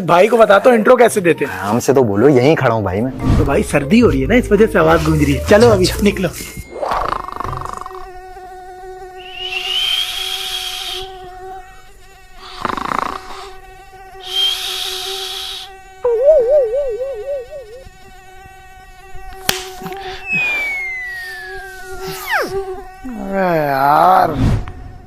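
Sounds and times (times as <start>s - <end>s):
mosquito whine: 4.3s - 25.0s
falling whistle: 9.2s - 11.2s, 14.2s - 14.8s, 16.0s - 17.9s, 20.1s - 22.6s
hissing bursts: 9.4s - 11.2s, 14.2s - 15.8s, 20.0s - 22.4s
wobbling warble: 16.0s - 17.9s.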